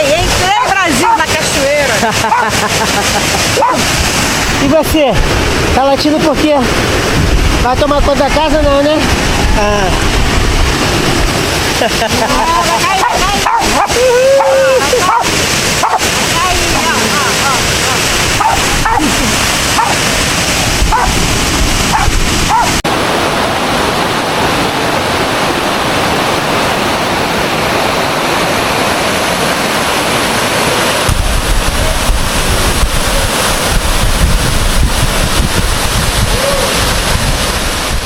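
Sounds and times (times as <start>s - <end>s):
waterfall rushing: 0.0s - 38.0s
dog barking: 0.6s - 1.3s, 2.2s - 2.6s, 3.5s - 3.9s, 13.0s - 14.0s, 14.8s - 16.1s, 18.4s - 19.2s, 19.8s - 20.0s, 20.9s - 21.2s, 21.9s - 22.8s
low rumble: 5.2s - 14.1s.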